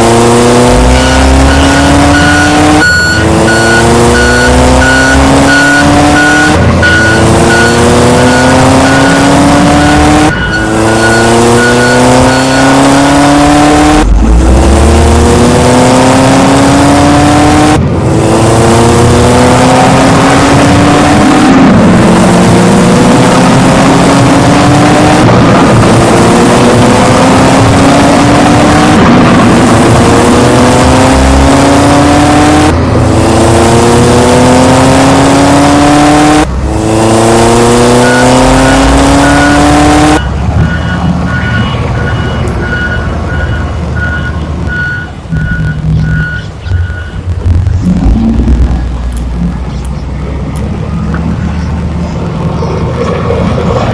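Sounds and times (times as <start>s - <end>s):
vehicle engine rising in pitch: 0.0s - 53.9s
reversing alarm beeps: 0.7s - 14.1s, 37.8s - 47.3s.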